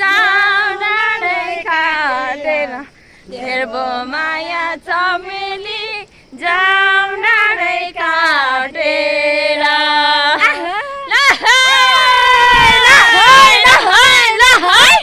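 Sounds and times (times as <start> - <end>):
singer breaths: 2.9 - 3.3, 6.0 - 6.4.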